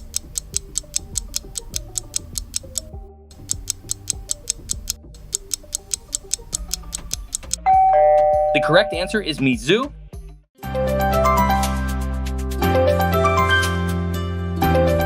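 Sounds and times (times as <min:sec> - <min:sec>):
phone ringtone with ticking: 0:00.0 - 0:09.2.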